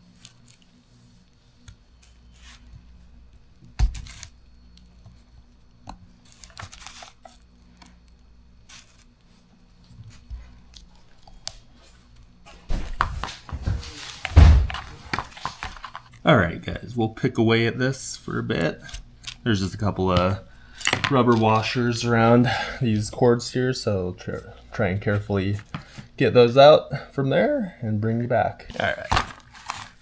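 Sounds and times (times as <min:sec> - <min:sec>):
heavy thump: 0:12.7 - 0:15.1
small clicks and rustling of parts: 0:20.2 - 0:21.8
clatter of handling parts: 0:20.7 - 0:21.8.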